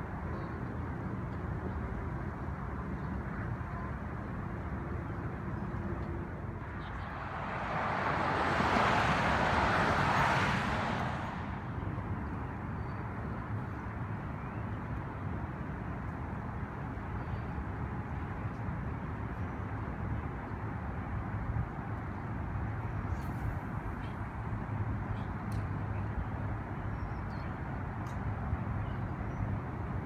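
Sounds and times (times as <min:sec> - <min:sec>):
rushing noise: 0:06.6 - 0:12.2.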